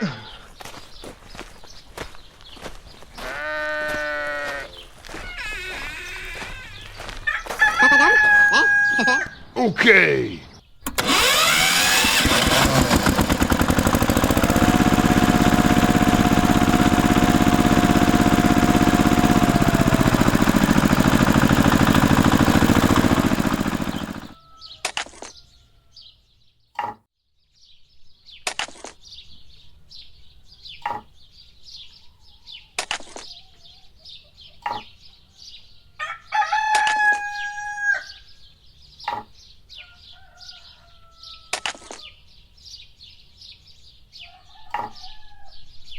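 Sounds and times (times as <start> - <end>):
small birds chirping: 0.0 - 10.9, 13.0 - 45.9
rooster crowing: 3.4 - 9.5, 24.0 - 26.1, 36.0 - 38.3, 39.8 - 41.8, 44.3 - 45.8
small engine running loudly: 10.9 - 24.4, 44.8 - 45.0
sharp taps: 30.8 - 31.1, 34.6 - 34.9, 44.7 - 45.0.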